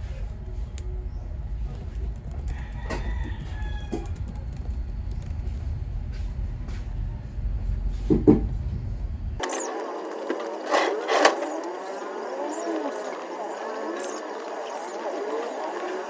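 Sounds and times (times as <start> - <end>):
steady low hum: 0.0 - 16.0
rooster crowing: 2.5 - 4.2.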